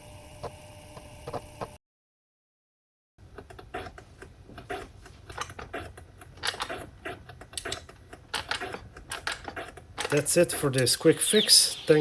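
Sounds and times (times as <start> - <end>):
disk drive motor hum: 0.0 - 1.8.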